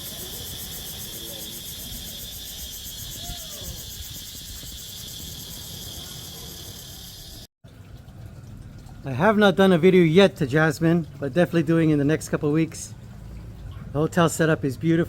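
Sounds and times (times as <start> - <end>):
insects chirping: 0.0 - 7.5.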